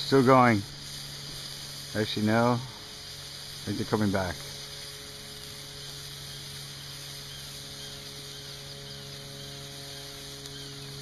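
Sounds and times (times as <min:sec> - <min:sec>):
boat motor humming: 0:00.0 - 0:11.0
faint bird chirps: 0:05.6 - 0:11.0.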